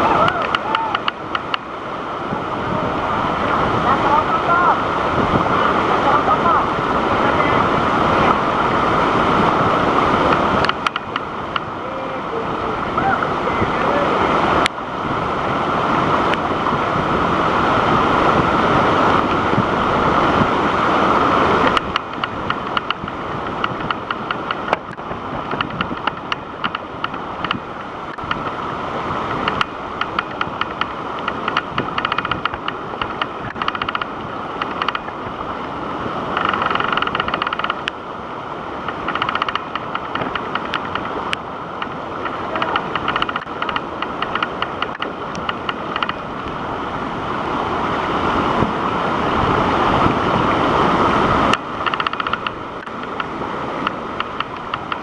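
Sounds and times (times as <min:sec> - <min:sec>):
waterfall rushing water: 0:00.0 - 0:55.0.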